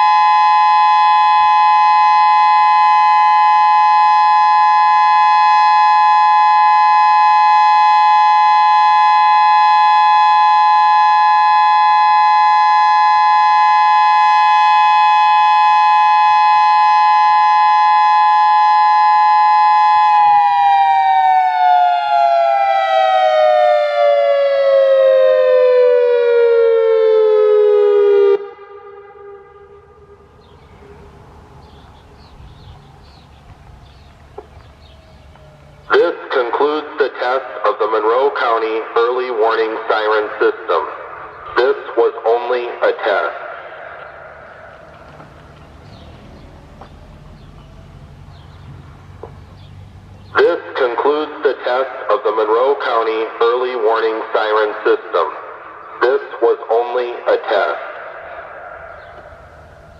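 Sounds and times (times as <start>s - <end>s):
electronic siren alert tone: 0.0s - 36.0s.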